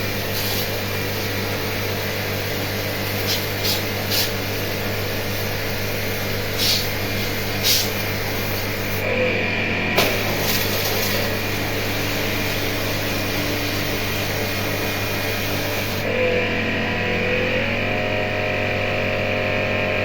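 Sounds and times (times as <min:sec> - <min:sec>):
water spray hissing: 0:00.0 - 0:00.8, 0:02.9 - 0:05.6, 0:06.3 - 0:09.0
electric pump humming: 0:00.0 - 0:20.0.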